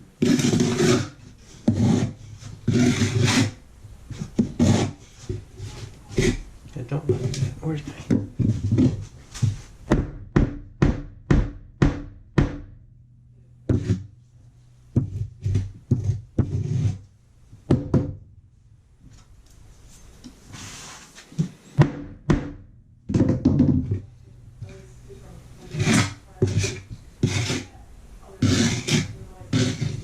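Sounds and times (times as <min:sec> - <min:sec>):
short scrape: 0:00.2 - 0:03.6, 0:19.9 - 0:21.3, 0:25.6 - 0:27.7, 0:28.4 - 0:30.0
tools knocking on wooden floor: 0:14.9 - 0:16.6, 0:17.6 - 0:18.2, 0:21.8 - 0:24.1.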